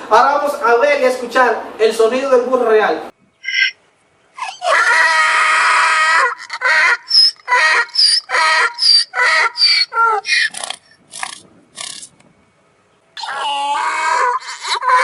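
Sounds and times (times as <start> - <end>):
donkey braying: 3.4 - 12.2, 13.2 - 15.0.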